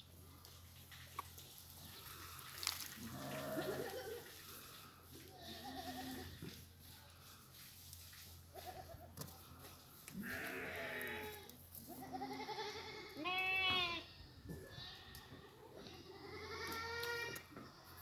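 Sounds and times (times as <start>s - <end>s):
goats bleating: 3.0s - 4.3s, 5.3s - 6.4s, 10.2s - 18.0s.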